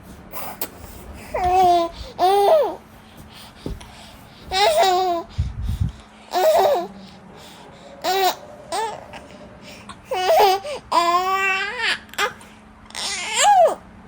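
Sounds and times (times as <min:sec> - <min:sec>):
baby babbling and squealing: 0:01.3 - 0:02.8, 0:04.5 - 0:05.3, 0:06.3 - 0:06.9, 0:08.0 - 0:09.4, 0:10.0 - 0:12.4.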